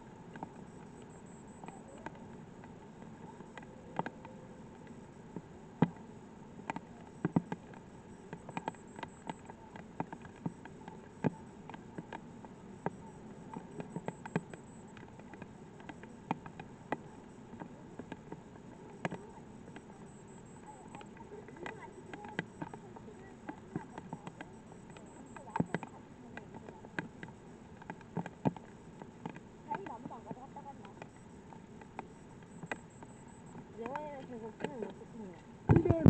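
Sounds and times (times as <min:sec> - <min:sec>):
raindrops ticking: 0:20.6 - 0:36.0.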